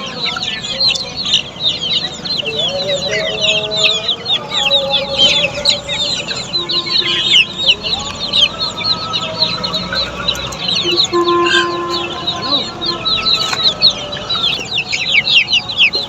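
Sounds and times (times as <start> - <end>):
chicks peeping: 0.0 - 16.0.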